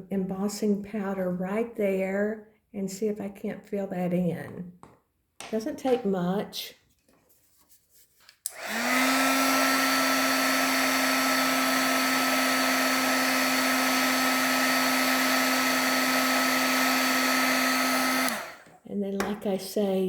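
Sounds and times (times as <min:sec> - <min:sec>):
heat tool fan whine: 0:08.5 - 0:18.6.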